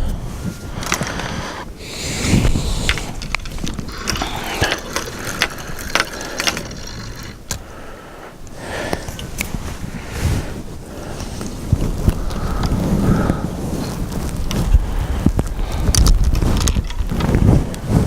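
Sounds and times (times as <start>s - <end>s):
fishing reel ratcheting whir: 2.8s - 7.5s.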